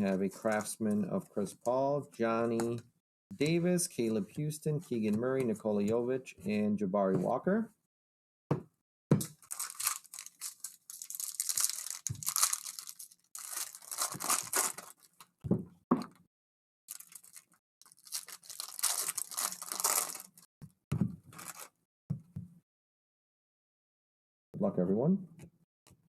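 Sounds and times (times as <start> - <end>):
plastic and foil wrapping crinkling: 9.2 - 15.4, 16.9 - 20.5, 21.3 - 21.7.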